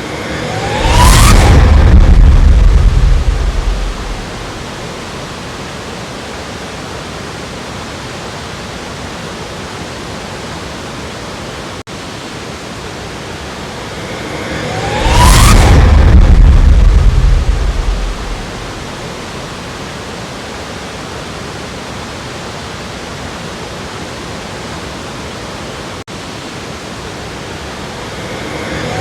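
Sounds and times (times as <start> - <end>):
deep rumble: 0.0 - 5.5, 13.6 - 19.6
waterfall rushing: 0.0 - 29.0.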